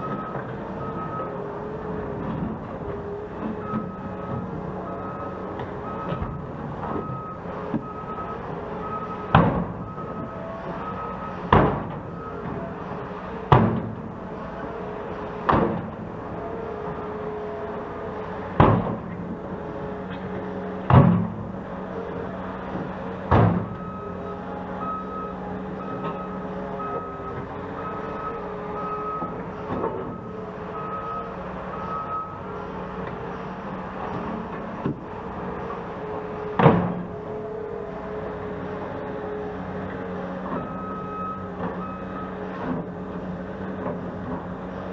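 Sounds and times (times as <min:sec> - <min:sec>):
heavy machinery running: 0:00.0 - 0:44.9
backup alarm beeping: 0:03.6 - 0:06.3, 0:07.0 - 0:11.4, 0:30.0 - 0:32.4.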